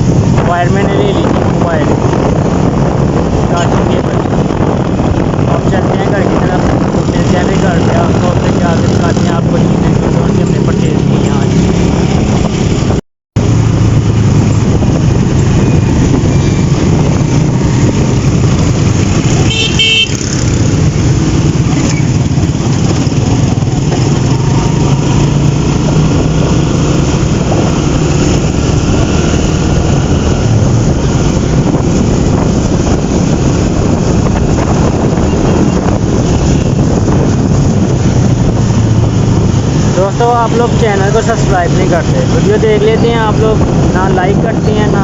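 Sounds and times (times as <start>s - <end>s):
street noise: 0.0s - 45.0s
car horn honking: 19.4s - 20.2s.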